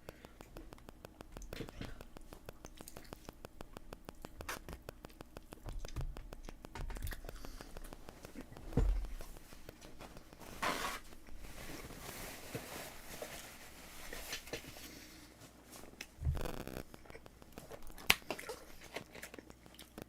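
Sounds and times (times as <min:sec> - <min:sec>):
person chewing: 0:00.0 - 0:11.5, 0:15.9 - 0:20.0
rustling: 0:07.2 - 0:19.4.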